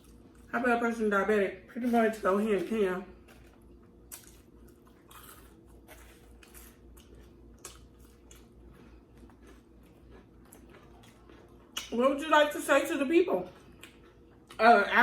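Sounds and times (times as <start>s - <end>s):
person chewing food: 0.0s - 0.5s, 3.1s - 11.9s, 13.5s - 14.6s
faint steady hum: 0.0s - 15.0s.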